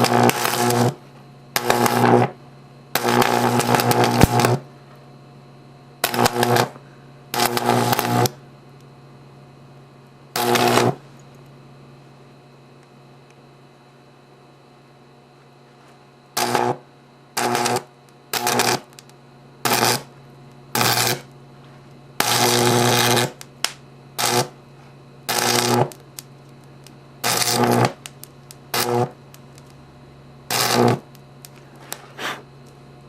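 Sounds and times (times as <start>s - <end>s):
electrical arcing buzz: 0.0s - 4.7s, 6.0s - 8.5s, 10.3s - 11.3s, 15.8s - 21.5s, 22.1s - 32.8s
faint steady hum: 0.0s - 33.0s.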